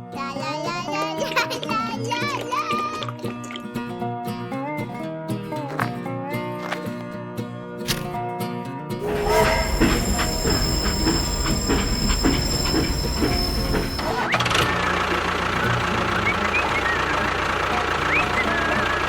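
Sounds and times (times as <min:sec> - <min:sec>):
rhythmic machine knocking: 0:09.0 - 0:14.3
wavering chirps: 0:09.0 - 0:14.3, 0:16.1 - 0:17.4
machine high-pitched whines: 0:09.0 - 0:15.3.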